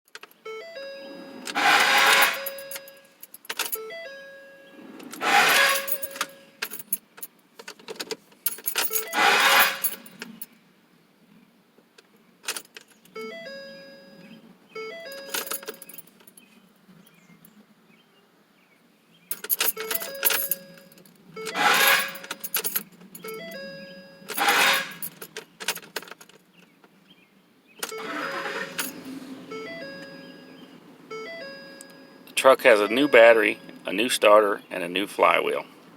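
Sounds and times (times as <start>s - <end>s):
car starter grinding: 0.6s - 6.6s, 8.8s - 10.4s, 21.4s - 23.6s, 24.3s - 25.2s, 27.8s - 33.9s
dashboard chime: 29.5s - 33.8s.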